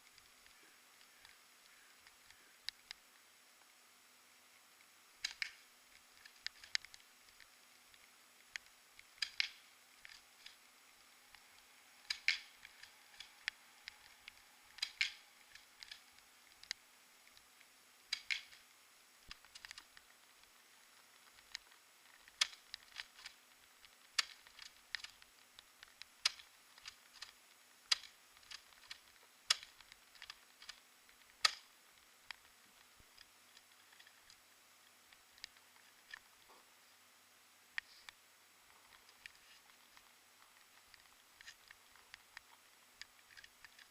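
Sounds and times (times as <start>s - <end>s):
airsoft shotgun plastic clicks: 5.2s - 5.6s, 8.5s - 10.6s, 12.0s - 17.5s, 18.1s - 18.7s, 21.3s - 31.7s.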